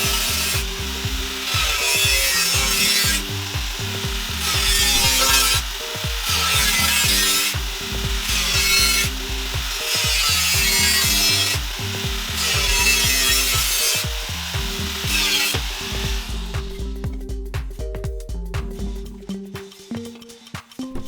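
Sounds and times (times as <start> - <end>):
background music with bass line: 0.0 - 21.0
hand tool scraping hard material: 4.4 - 7.6.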